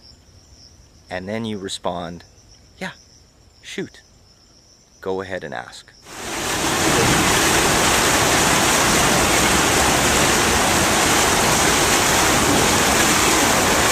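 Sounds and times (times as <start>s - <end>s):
steady rushing noise: 6.1s - 13.9s.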